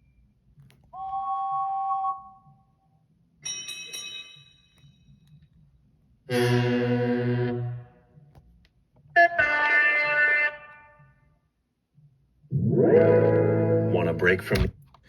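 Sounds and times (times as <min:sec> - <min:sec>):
cartoon train whistle: 0:01.0 - 0:02.4.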